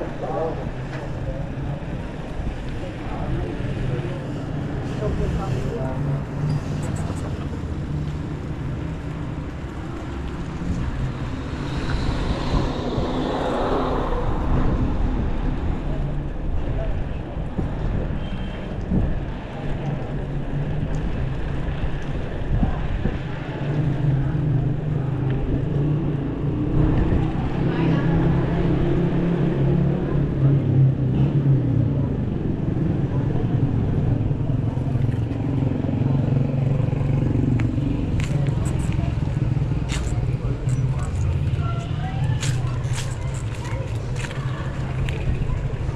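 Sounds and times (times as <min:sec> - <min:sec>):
street traffic rumble: 0:00.0 - 0:45.9
low rumble: 0:09.4 - 0:18.0.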